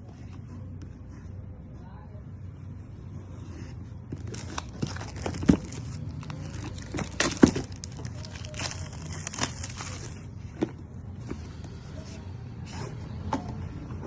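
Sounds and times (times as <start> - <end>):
crinkling plastic: 4.1 - 10.3
cardboard rustling: 4.1 - 11.4.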